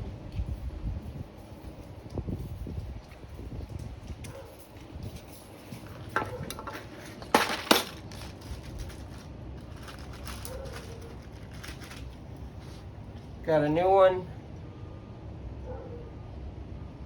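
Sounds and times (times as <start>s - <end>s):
clicks and clinks of small hard parts: 4.2s - 12.2s.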